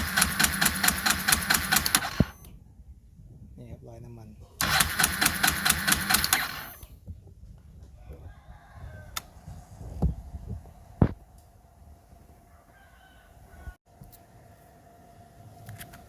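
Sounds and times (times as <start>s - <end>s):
fuel injector rapid clicking: 0.0s - 2.3s, 4.6s - 6.9s
distant rooster crowing: 7.8s - 9.6s, 12.4s - 13.8s.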